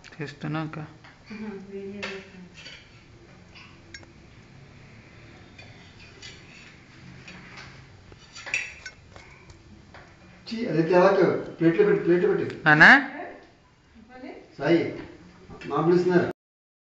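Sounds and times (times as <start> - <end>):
cutlery clinking on a plate: 2.0 - 4.1, 5.5 - 9.3.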